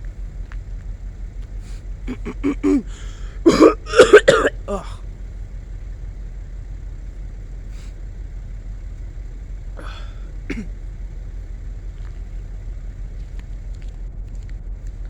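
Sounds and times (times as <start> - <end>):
steady low rumble: 0.0 - 15.0
person grunting: 2.1 - 5.0.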